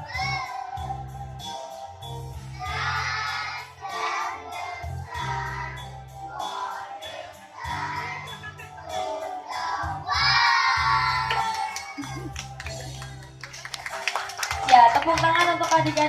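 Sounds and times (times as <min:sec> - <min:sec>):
children singing together: 0:00.0 - 0:12.4.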